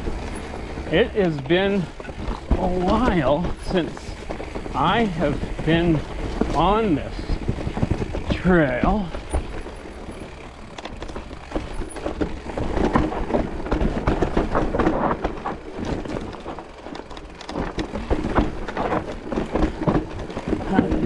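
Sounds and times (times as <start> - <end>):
bike rattling and knocking: 0.0 - 21.0
tyres rolling over dirt and rocks: 0.0 - 21.0.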